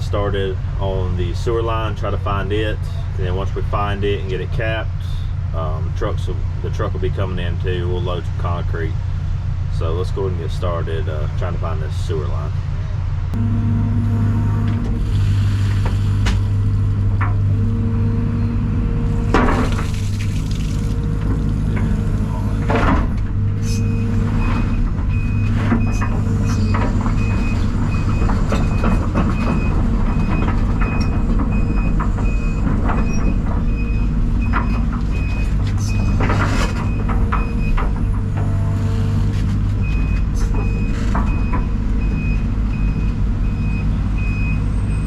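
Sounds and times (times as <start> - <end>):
excavator diesel engine hum: 0.0 - 45.0
digging clanks: 19.2 - 33.7
backup alarm beeping: 23.6 - 36.2, 39.8 - 45.0.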